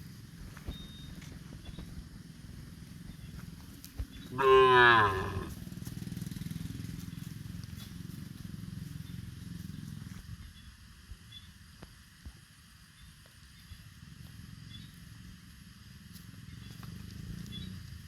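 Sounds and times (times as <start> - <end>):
low steady rumble: 0.0 - 18.0
cow mooing: 4.3 - 5.6.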